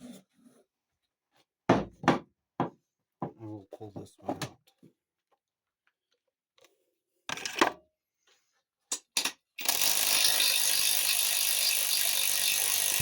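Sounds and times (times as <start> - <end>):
power wrench running: 9.6 - 13.0.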